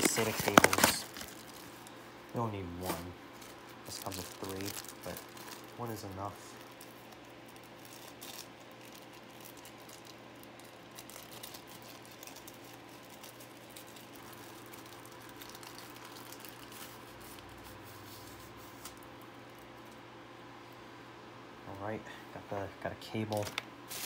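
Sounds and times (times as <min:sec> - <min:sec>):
cable pack clicks and rustles: 0:00.0 - 0:01.9
low electrical hum: 0:00.0 - 0:24.0.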